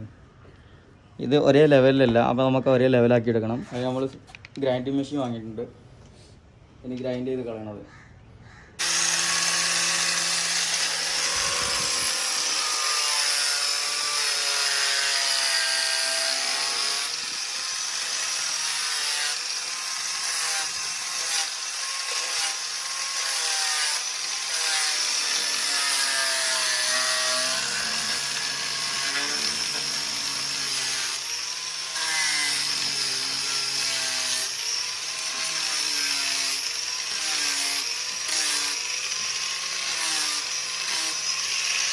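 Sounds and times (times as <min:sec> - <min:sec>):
electric grinder grinding: 0:08.8 - 0:41.9.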